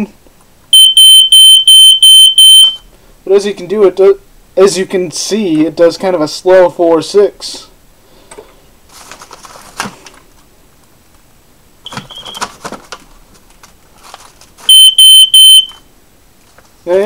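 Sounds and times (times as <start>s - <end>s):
shrill alarm beeps: 0.7s - 2.8s, 14.7s - 15.9s
smoke detector chirp: 0.7s - 2.9s, 14.7s - 15.9s.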